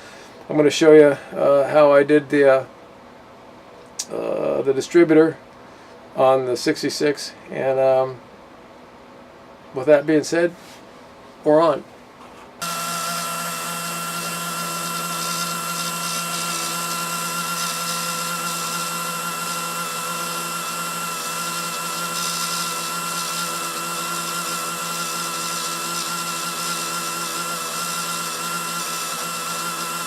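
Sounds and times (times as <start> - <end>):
electric power tool motor: 12.6 - 30.0.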